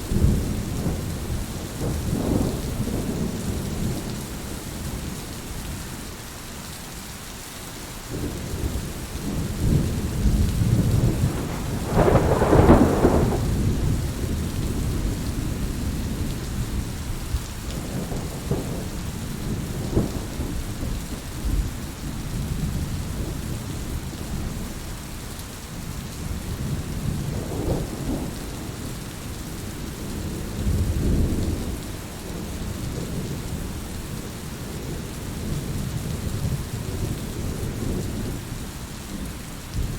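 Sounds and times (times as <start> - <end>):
rolling thunder: 0.0 - 4.0, 8.2 - 16.9
steady rain: 0.0 - 39.9.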